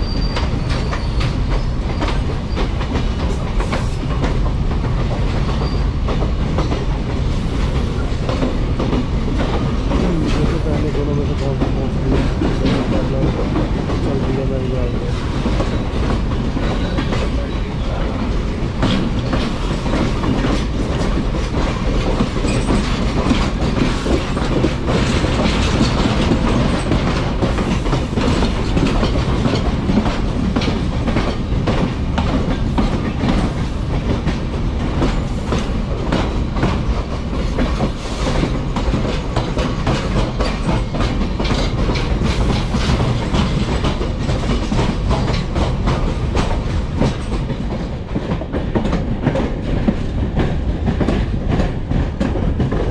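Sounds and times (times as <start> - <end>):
train rumbling on track: 0.0 - 52.9
wheels clattering over rails: 0.0 - 52.9.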